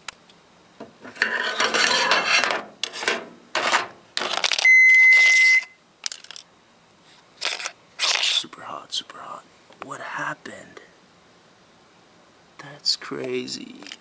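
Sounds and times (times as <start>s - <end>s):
scraping and clattering handling: 1.0s - 4.6s
electronic beep: 4.6s - 5.8s.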